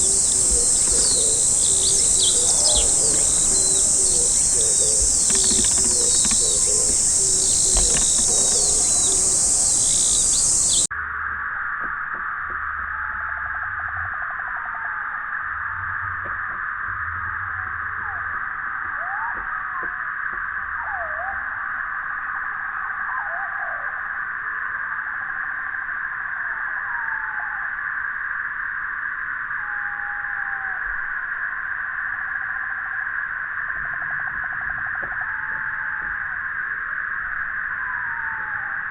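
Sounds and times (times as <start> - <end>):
bird chirps: 0.0 - 10.9
dove cooing: 0.0 - 10.9
high-pitched insect chorus: 0.0 - 10.9
low insect buzz: 0.0 - 10.9
steady high-pitched hiss: 0.0 - 11.2.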